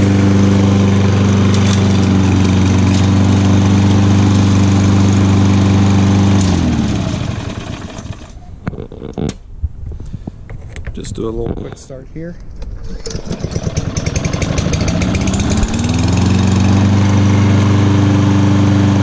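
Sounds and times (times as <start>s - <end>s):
small lawn mower engine running: 0.0s - 8.4s, 12.8s - 19.0s.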